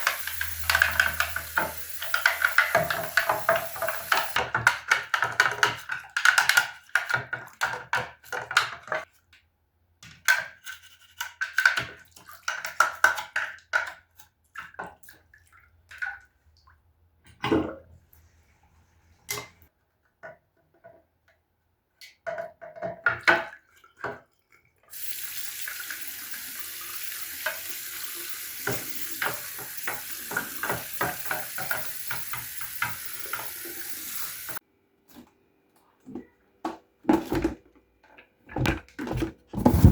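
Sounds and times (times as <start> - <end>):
tap water running into sink: 0.0 - 5.9, 24.9 - 34.6
tap shutting off: 25.0 - 34.6.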